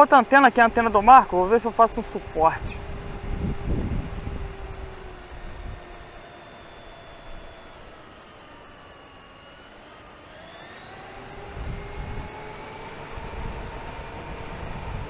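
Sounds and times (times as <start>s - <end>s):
electric motor whine: 0.0s - 15.0s
wind rumble on microphone: 2.2s - 6.0s, 11.5s - 15.0s.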